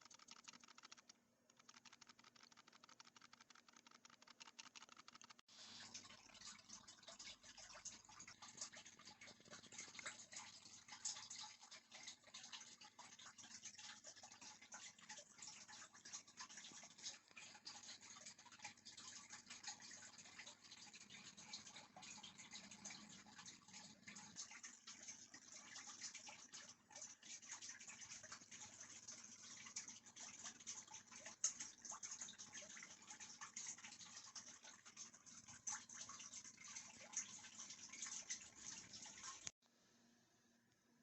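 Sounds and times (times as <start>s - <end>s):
small clicks: 0.0s - 5.5s.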